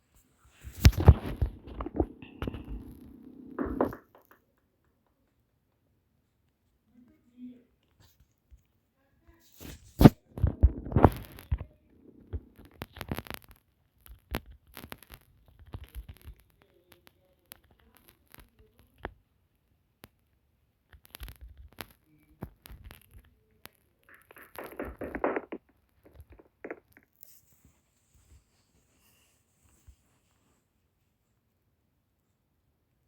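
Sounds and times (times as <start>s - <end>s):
knocks and thumps: 0.7s - 4.5s, 24.1s - 27.1s.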